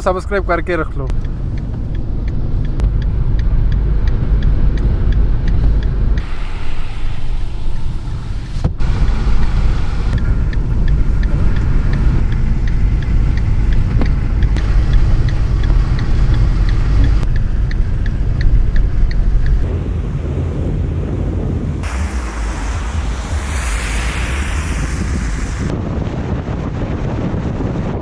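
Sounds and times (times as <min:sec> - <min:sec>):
light ticking: 0:00.0 - 0:06.3, 0:08.8 - 0:19.7
engine and tyres rumbling: 0:00.0 - 0:28.0.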